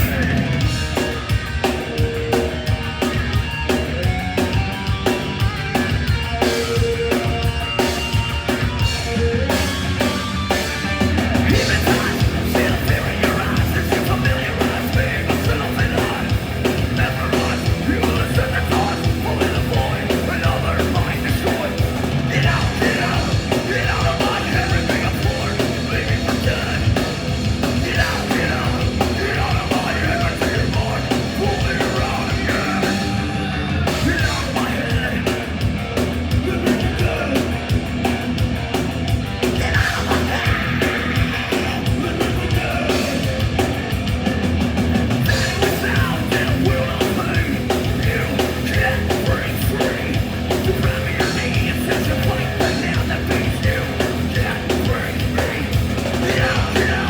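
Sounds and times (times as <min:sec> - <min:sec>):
bass guitar: 0:00.0 - 0:57.0
distorted guitars: 0:00.0 - 0:57.0
fast drums: 0:00.0 - 0:57.0
shouted vocals: 0:10.9 - 0:35.4, 0:39.6 - 0:43.9, 0:45.3 - 0:57.0.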